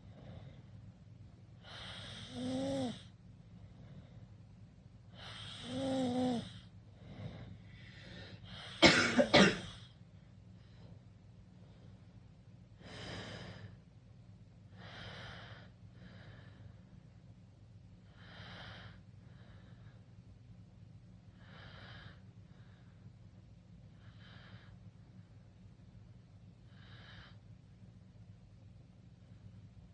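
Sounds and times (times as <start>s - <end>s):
person snoring: 1.6s - 3.1s, 5.2s - 6.6s
person breathing: 5.1s - 8.8s, 12.8s - 13.8s, 14.7s - 17.0s, 21.3s - 23.2s
person coughing: 8.8s - 9.8s.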